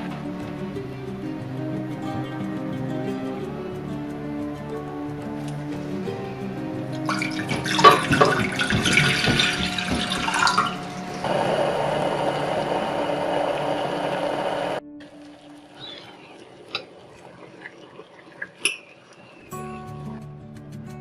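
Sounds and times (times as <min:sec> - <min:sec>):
soft background music: 0:00.0 - 0:11.3, 0:12.3 - 0:18.0, 0:19.1 - 0:21.0
water running: 0:05.2 - 0:19.9
water splashing: 0:06.9 - 0:19.7.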